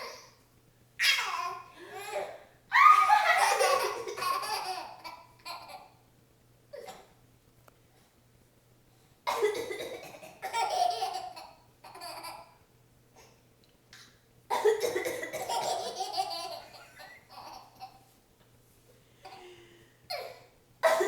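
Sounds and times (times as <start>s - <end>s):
baby laughing hysterically: 2.8s - 5.9s, 10.4s - 12.5s, 15.3s - 18.0s
woman coughing: 19.3s - 21.0s.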